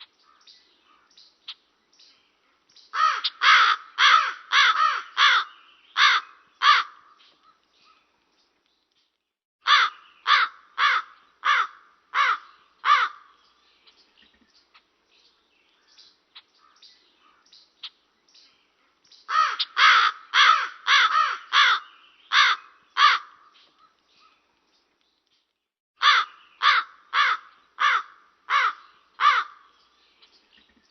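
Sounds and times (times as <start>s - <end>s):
crow cawing: 3.0s - 7.2s, 9.6s - 13.4s, 19.3s - 23.5s, 26.0s - 29.7s.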